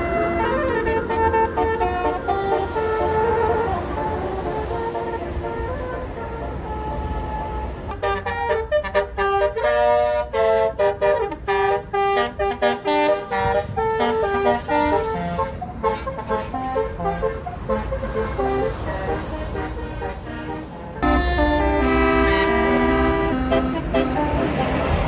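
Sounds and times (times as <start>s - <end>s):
low engine rumble: 0.0s - 25.0s
multi-trumpet air horn melody: 0.0s - 25.0s.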